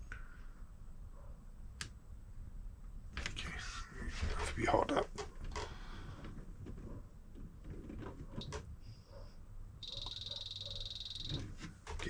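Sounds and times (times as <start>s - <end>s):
electronic beeps: 9.8s - 11.5s.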